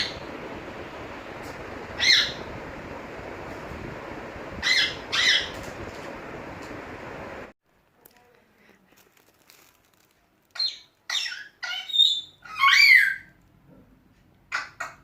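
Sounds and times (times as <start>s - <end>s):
parrot squawking calls: 2.0s - 2.5s, 4.6s - 5.6s, 10.6s - 13.3s.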